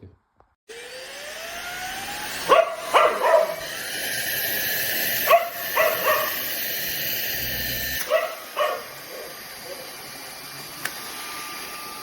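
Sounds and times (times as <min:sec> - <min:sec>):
vacuum cleaner motor whirring: 0:00.7 - 0:12.0
dog barking: 0:02.5 - 0:03.6, 0:05.2 - 0:06.4, 0:08.1 - 0:09.9.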